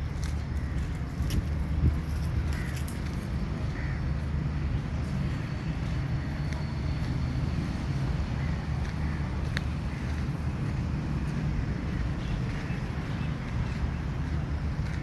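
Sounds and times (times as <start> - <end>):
crow cawing: 2.4 - 2.9, 3.6 - 4.2, 8.3 - 10.4.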